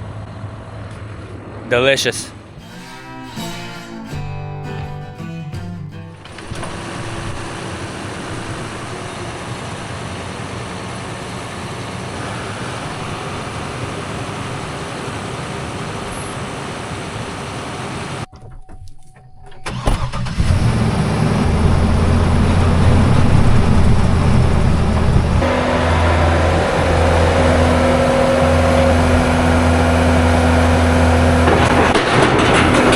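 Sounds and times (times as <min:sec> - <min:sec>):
vehicle engine starting and running: 0:03.8 - 0:18.8, 0:19.5 - 0:32.9
steady background noise: 0:06.2 - 0:19.3.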